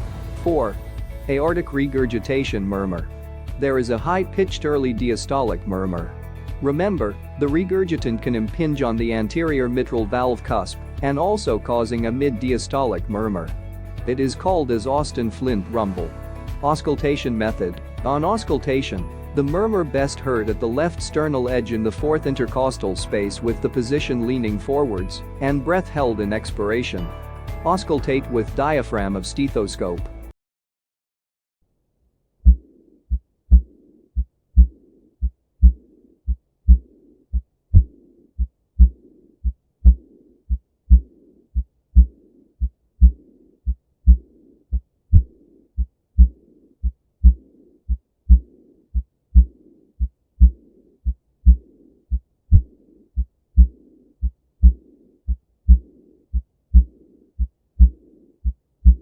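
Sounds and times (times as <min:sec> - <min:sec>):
high-pitched heart murmur: 0:32.4 - 0:32.6, 0:33.5 - 0:34.8, 0:35.6 - 0:35.8, 0:36.7 - 0:37.9, 0:38.8 - 0:41.1, 0:42.0 - 0:43.2, 0:44.0 - 0:44.3, 0:47.2 - 0:48.5, 0:49.3 - 0:50.6, 0:51.4 - 0:53.8, 0:54.6 - 0:57.0, 0:57.8 - 0:59.0
heartbeat thuds: 0:32.4 - 0:59.0.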